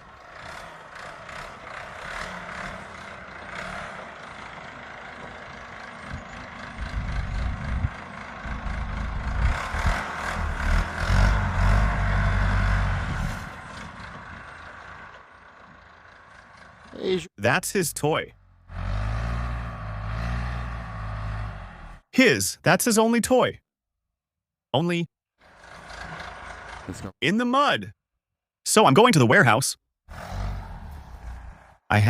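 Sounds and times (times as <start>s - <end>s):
backhoe diesel engine running: 0.0s - 22.1s, 25.4s - 27.6s.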